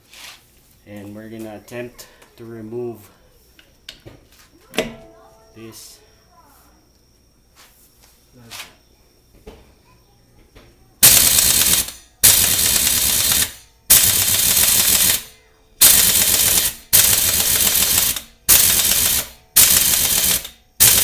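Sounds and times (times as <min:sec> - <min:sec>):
pneumatic impact wrench hammering: 0:11.0 - 0:21.0.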